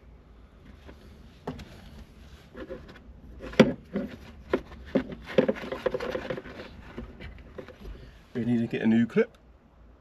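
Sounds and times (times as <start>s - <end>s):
hard parts rubbing: 0.7s - 8.6s.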